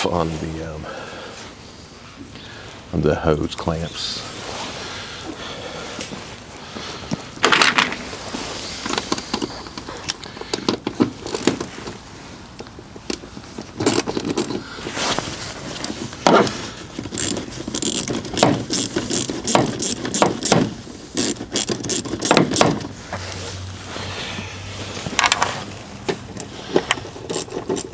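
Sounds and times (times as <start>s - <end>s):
ratchet clicking: 13.8s - 14.6s, 16.9s - 22.9s, 26.3s - 27.9s.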